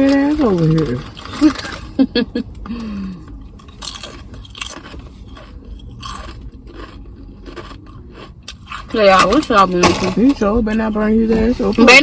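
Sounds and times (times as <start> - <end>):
crunchy food being chewed: 3.2 - 9.5.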